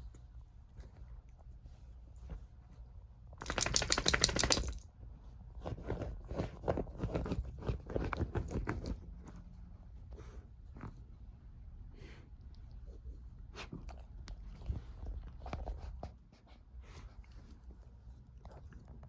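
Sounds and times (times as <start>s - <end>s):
dog making clicking noises: 3.4s - 4.8s.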